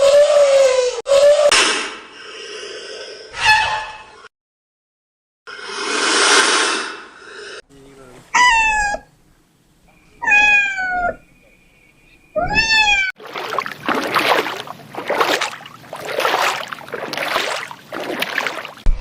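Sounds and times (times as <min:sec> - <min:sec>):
cat meowing: 0:08.4 - 0:09.1, 0:10.2 - 0:11.2, 0:12.4 - 0:13.1.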